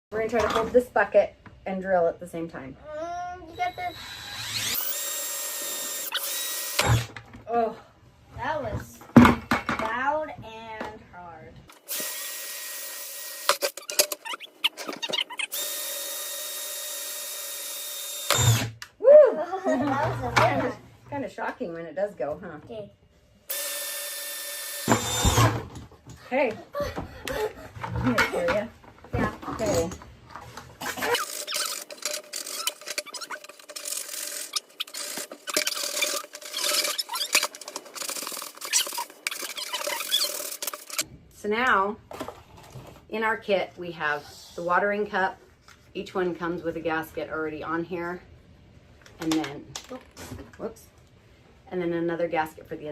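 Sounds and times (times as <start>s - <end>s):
drill bit knocking and squealing in plastic: 3.6s - 7.2s, 13.4s - 15.8s, 31.0s - 41.0s
drill spinning with steady whir: 3.6s - 7.2s, 11.8s - 13.8s, 15.4s - 18.8s, 23.5s - 25.8s, 31.2s - 41.0s.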